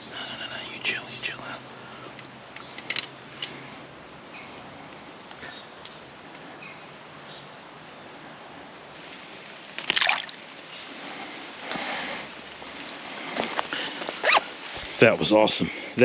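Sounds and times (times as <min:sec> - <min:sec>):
creek trickling over rocks: 0:08.9 - 0:15.5
water splashing: 0:09.7 - 0:10.6.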